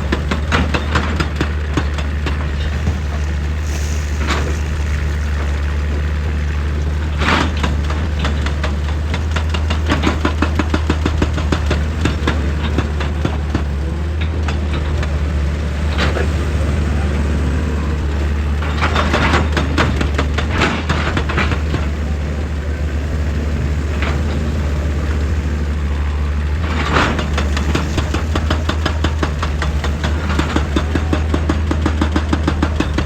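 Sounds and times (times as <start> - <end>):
excavator diesel engine running: 0.0 - 33.0
bucket knocking and scraping rock: 1.1 - 13.4, 26.6 - 33.0.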